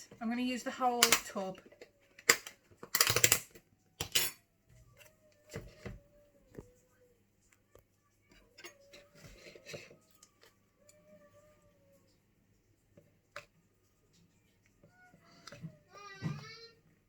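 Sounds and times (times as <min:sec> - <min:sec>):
kitchen utensils clattering: 0:03.0 - 0:04.4.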